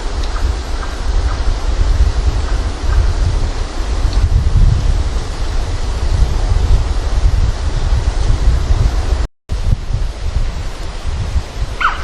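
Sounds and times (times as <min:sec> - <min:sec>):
wind buffeting microphone: 0:00.0 - 0:12.0.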